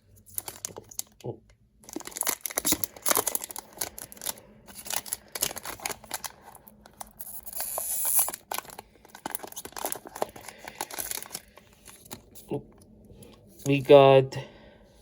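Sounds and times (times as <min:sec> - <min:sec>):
foil pack crinkling and tearing: 0:00.3 - 0:12.5.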